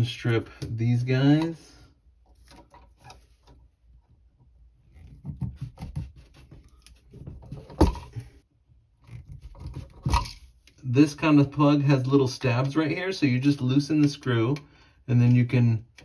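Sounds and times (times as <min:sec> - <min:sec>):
wire strippers on insulation: 0:04.8 - 0:08.2.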